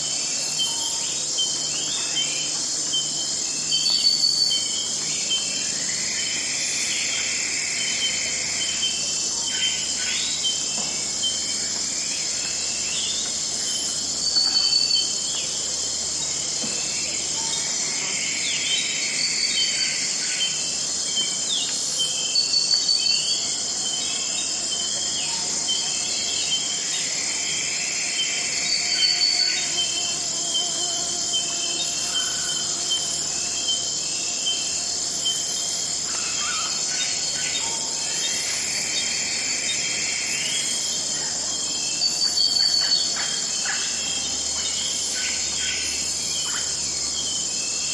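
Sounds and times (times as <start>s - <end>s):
chorus of insects and crickets: 0.0s - 47.9s.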